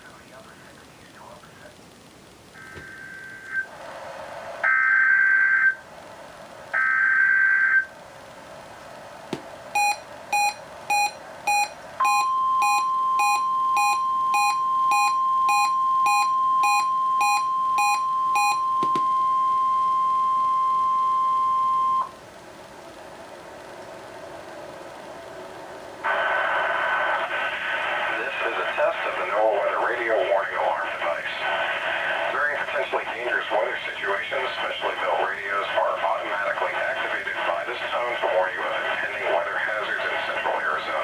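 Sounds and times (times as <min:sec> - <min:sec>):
radio hiss: 0:00.0 - 0:04.7, 0:22.6 - 0:41.0
steady warning alarm tone: 0:02.6 - 0:03.7, 0:04.6 - 0:05.8, 0:06.8 - 0:07.9, 0:09.7 - 0:22.2
short electronic beeps: 0:09.8 - 0:22.1.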